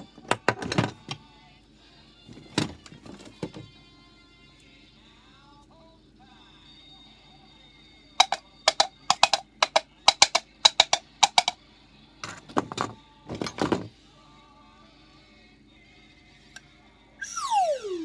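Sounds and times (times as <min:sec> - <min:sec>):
faint background music: 0:00.0 - 0:18.0
coconut shells clacking like hooves: 0:08.2 - 0:11.6.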